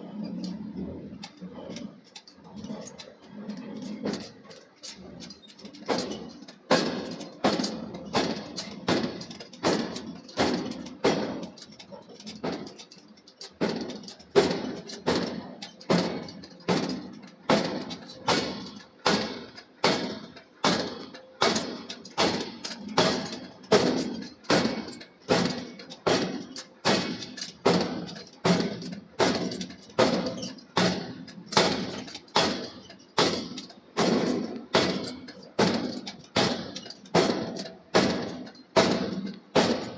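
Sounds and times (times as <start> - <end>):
hammer striking hot steel: 4.0 - 39.9.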